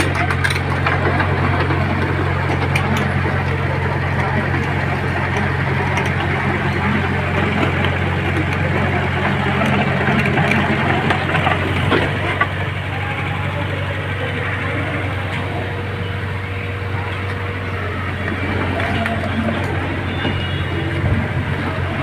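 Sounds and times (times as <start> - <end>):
construction machinery engine humming: 0.0 - 22.0.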